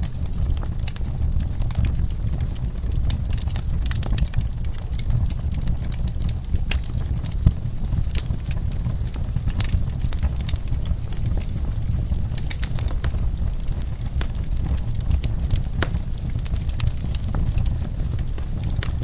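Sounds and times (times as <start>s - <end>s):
fire crackling and popping: 0.0s - 19.0s
low rumble of flames: 0.0s - 19.0s.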